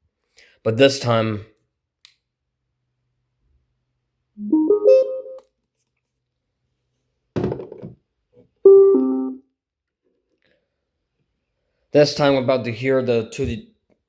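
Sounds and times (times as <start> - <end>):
electronic chime jingle: 4.4 - 5.4
thunk: 7.4 - 8.0.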